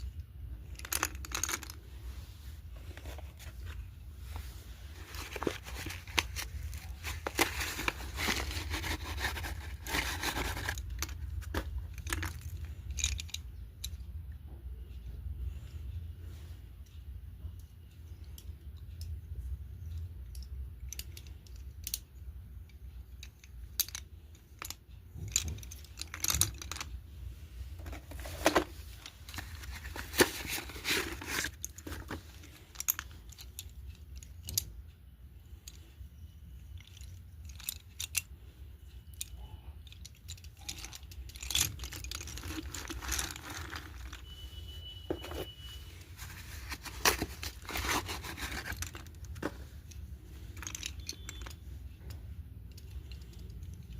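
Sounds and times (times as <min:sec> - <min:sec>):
packaging rustling and tearing: 0:05.0 - 0:10.8, 0:29.4 - 0:32.2, 0:41.5 - 0:44.3, 0:46.2 - 0:49.5.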